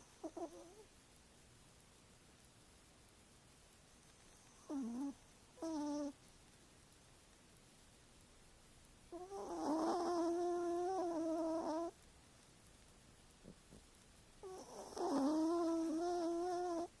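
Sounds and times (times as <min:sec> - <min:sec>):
cat snoring: 0:00.2 - 0:00.8, 0:04.5 - 0:06.2, 0:09.1 - 0:12.0, 0:14.4 - 0:16.9.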